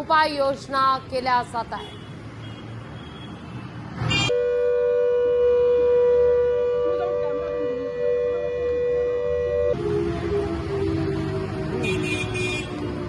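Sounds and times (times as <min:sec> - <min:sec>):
warning siren: 0:04.3 - 0:13.0.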